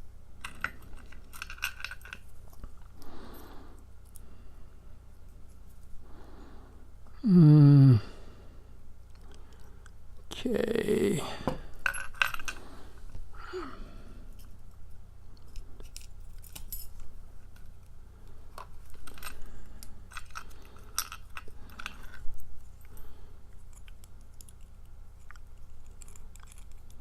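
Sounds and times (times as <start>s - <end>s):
metal clicks and clinks: 0.4s - 2.7s, 11.8s - 12.6s, 15.5s - 17.1s, 18.6s - 23.0s.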